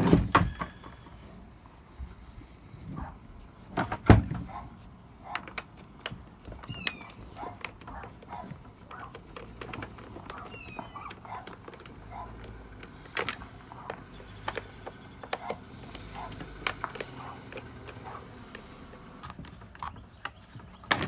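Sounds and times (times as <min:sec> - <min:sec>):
hand tools clicking on plastic: 0:03.6 - 0:21.0.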